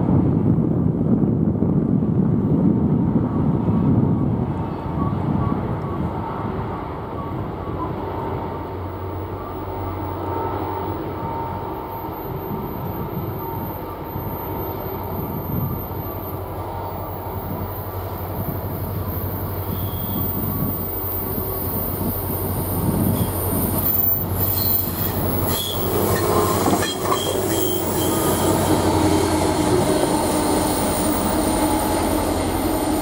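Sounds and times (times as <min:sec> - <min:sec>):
freight train rumbling: 0:00.0 - 0:33.0
high-pitched wheel squeal: 0:19.1 - 0:29.4.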